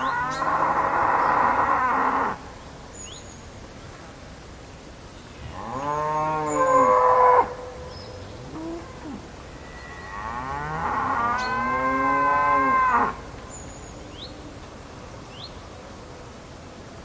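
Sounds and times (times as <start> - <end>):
cow mooing: 5.6 - 7.6, 9.8 - 13.2.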